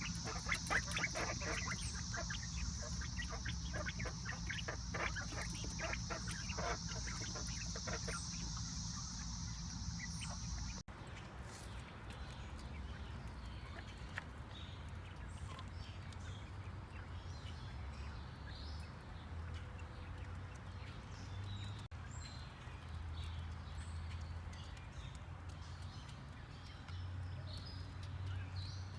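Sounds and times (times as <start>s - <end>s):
birds chirping and calling: 0.0s - 10.8s
sharp clicking: 0.0s - 10.8s
steady high buzz: 0.0s - 10.9s.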